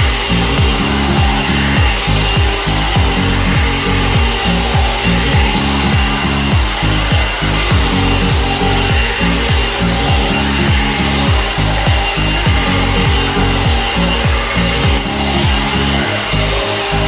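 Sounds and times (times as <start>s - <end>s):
background music with deep bass: 0.0s - 17.0s
hot air brush motor blowing: 0.0s - 17.0s.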